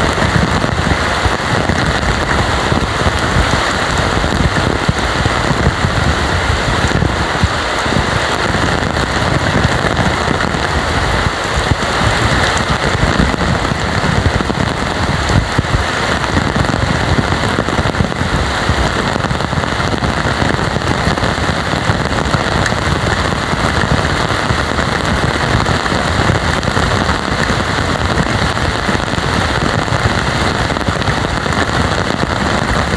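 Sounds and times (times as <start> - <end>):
heavy rain pouring: 0.0 - 32.9
raindrops crackling on surfaces: 0.0 - 32.9.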